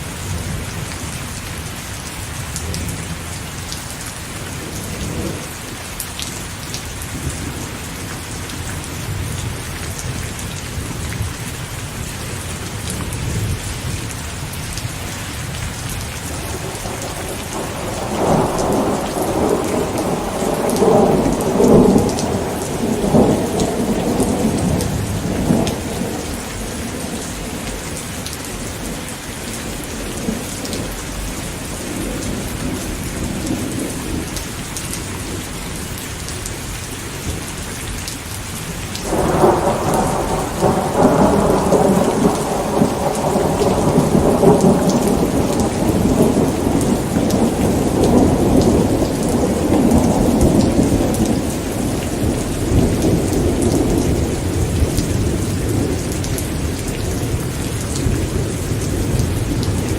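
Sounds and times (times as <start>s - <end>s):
steady rain: 0.0s - 59.9s
thunder rumbling: 15.5s - 34.4s, 39.0s - 59.9s.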